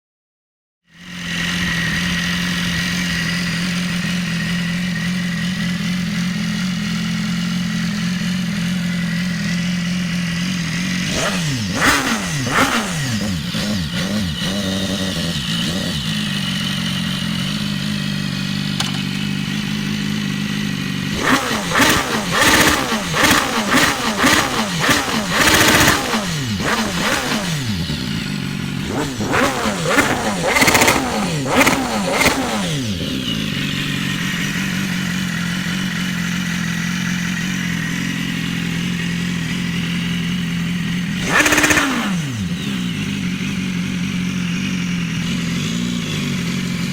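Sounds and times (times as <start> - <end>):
motorcycle engine idling and revving: 0.8 - 46.9.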